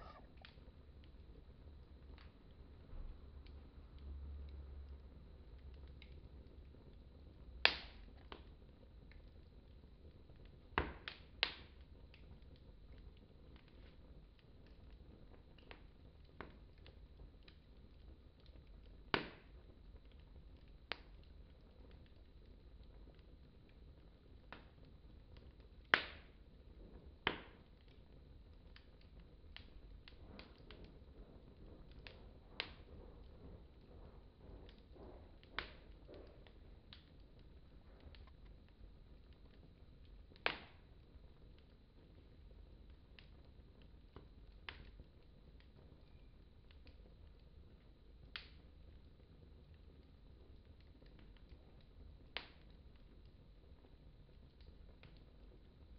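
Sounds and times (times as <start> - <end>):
fire popping: 0.0 - 55.9
wood fire crackling: 0.0 - 55.9
faint ticks: 3.3 - 55.9
loud sharp fire pops: 7.6 - 8.5, 10.7 - 11.8, 19.1 - 19.6, 25.9 - 26.4, 27.3 - 27.7, 31.8 - 37.5, 40.3 - 41.0, 52.4 - 52.8.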